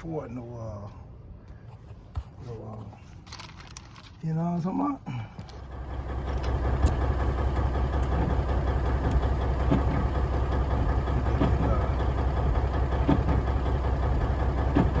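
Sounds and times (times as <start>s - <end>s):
diesel truck engine idling: 5.1s - 15.0s.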